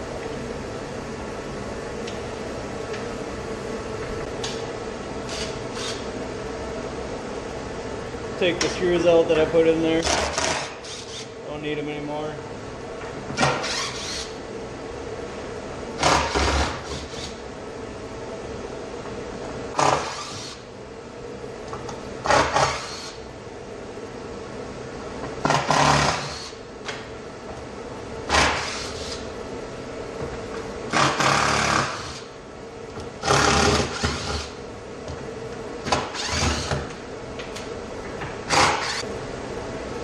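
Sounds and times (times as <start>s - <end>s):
steady hum: 0.0s - 40.0s
power drill driver running: 5.3s - 6.0s, 10.0s - 11.3s, 13.4s - 14.3s, 19.8s - 20.6s, 22.3s - 23.2s, 25.4s - 26.6s, 28.3s - 29.2s, 33.2s - 34.5s, 36.1s - 36.8s, 38.5s - 39.0s.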